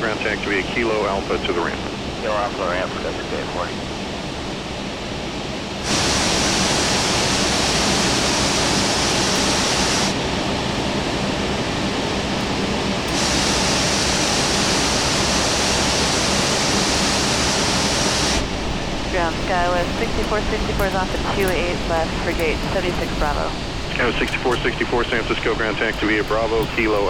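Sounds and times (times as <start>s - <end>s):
jet airliner taxiing hiss: 5.8s - 27.0s.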